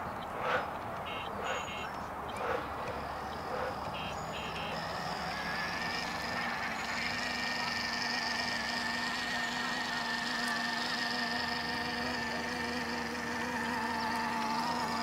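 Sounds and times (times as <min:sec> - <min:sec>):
steady electric whine: 0:00.0 - 0:15.0
electronic toy horn beeps: 0:01.0 - 0:01.9, 0:03.9 - 0:04.9.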